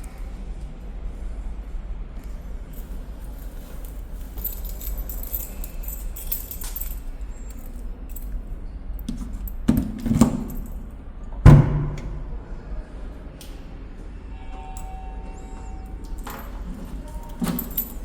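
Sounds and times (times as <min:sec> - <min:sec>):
keys jangling: 0:02.8 - 0:10.9, 0:16.1 - 0:18.0
heavy thud: 0:11.4 - 0:12.3.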